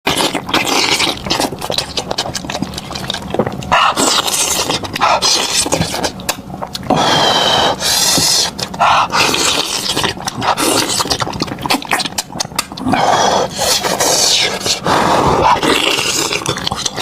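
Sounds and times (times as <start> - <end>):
slurping suck: 0.1 - 17.0
wet chewing: 0.1 - 17.0
sticky lip-smacks: 7.8 - 12.9.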